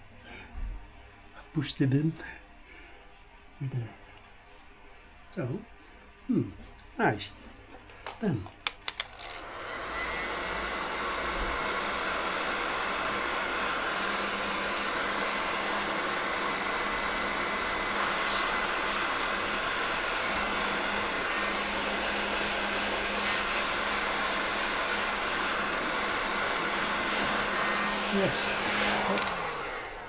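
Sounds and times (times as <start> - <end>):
heat gun blowing: 8.7 - 30.0.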